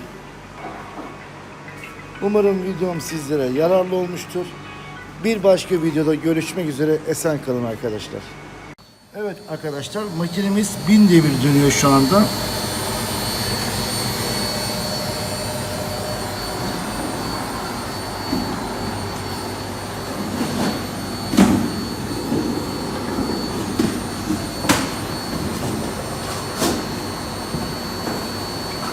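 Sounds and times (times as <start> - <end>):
washing machine spinning: 8.8 - 28.9.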